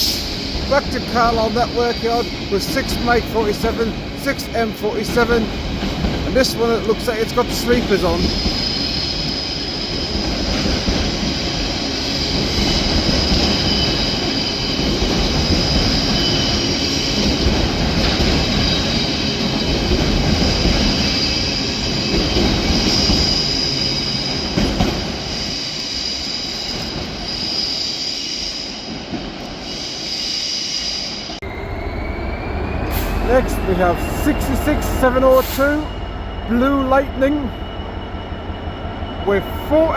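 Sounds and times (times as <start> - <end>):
freight train rumbling past: 0.0 - 39.9
high-pitched wheel squeal: 8.0 - 10.8, 11.6 - 17.6, 20.5 - 24.5, 29.6 - 39.9.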